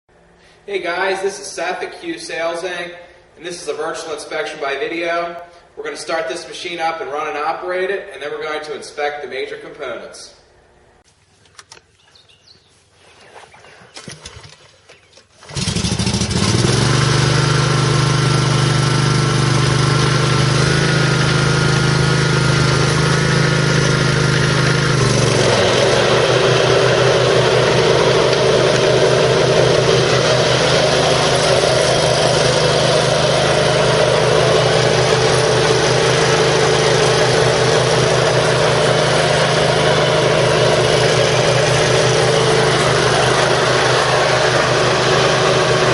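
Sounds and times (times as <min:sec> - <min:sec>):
mower engine starting and running: 0:14.0 - 0:45.9.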